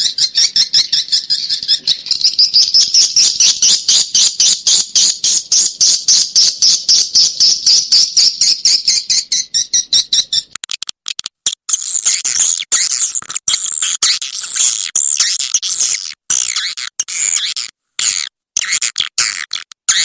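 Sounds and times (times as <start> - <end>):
high bird chirps: 0.0 - 10.6.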